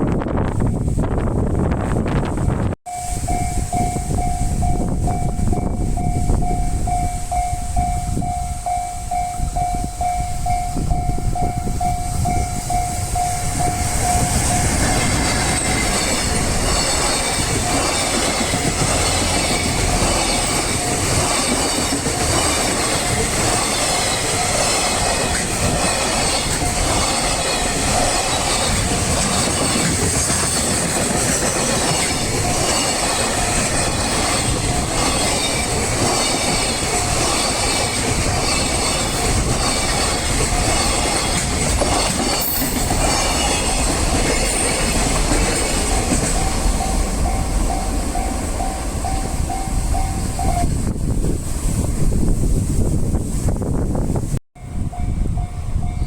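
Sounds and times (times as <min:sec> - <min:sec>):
level crossing warning bell: 0:02.9 - 0:50.8
train wheels clattering over rails: 0:12.4 - 0:50.5.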